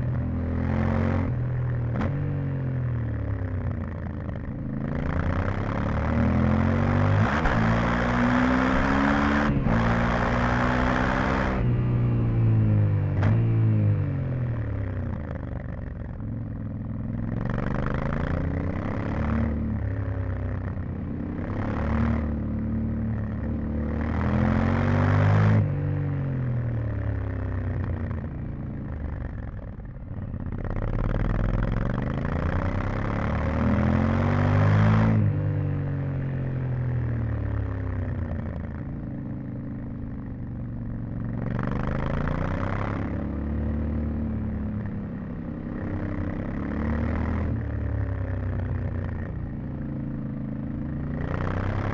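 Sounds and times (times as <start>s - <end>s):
motorcycle engine revving: 0.0s - 51.9s.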